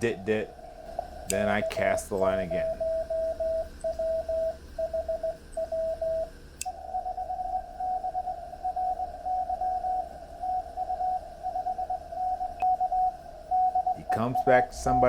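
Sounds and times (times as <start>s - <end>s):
morse code sidetone: 0.0s - 15.0s
received morse code signal: 0.0s - 15.0s.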